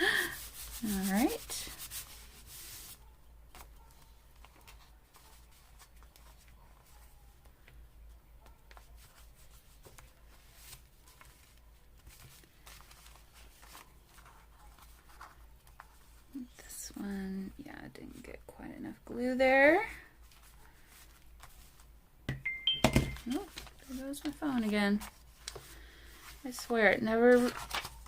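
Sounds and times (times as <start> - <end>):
paper rustling and tapping: 21.0 - 25.7, 26.5 - 28.0.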